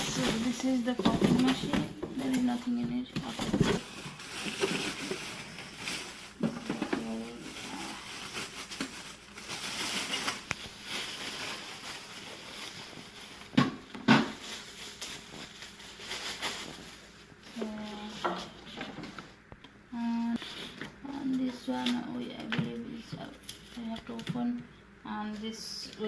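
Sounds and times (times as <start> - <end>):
plastic parts rustling: 0.0 - 13.6, 14.2 - 19.2.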